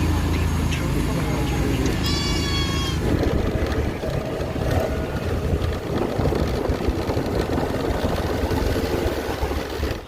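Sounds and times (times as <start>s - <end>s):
vehicle running: 0.0s - 10.0s
wind rushing over microphone: 2.8s - 10.0s.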